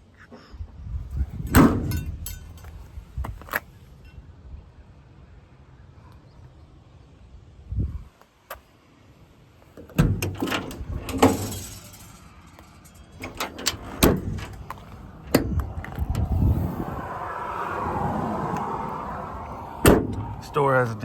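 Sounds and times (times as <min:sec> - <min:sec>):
metal doors knocking shut: 0:01.4 - 0:02.7, 0:09.8 - 0:12.3, 0:13.1 - 0:16.3, 0:19.8 - 0:20.5
latch clicks: 0:01.4 - 0:02.8, 0:09.8 - 0:16.4, 0:19.8 - 0:20.4.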